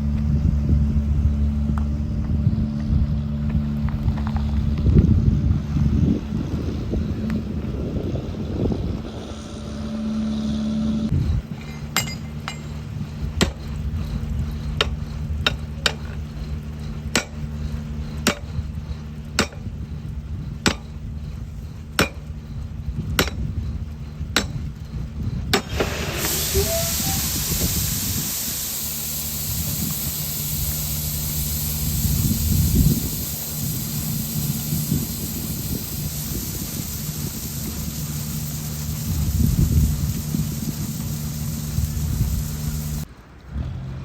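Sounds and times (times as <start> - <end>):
construction machinery engine running: 0.0 - 44.0
loud steady hiss: 2.6 - 43.1
sharp metallic clinks: 9.8 - 25.7.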